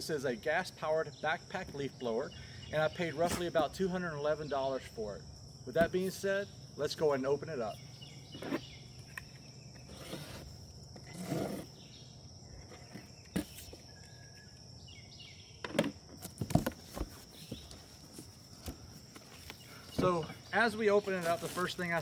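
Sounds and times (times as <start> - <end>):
cardboard box being opened: 16.3 - 20.1.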